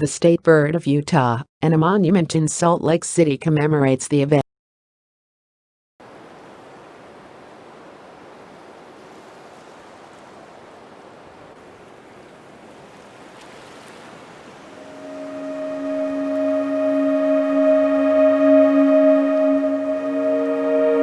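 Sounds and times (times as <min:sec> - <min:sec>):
ocean surf: 0:06.0 - 0:21.0
steady low tone with overtones: 0:15.0 - 0:21.0.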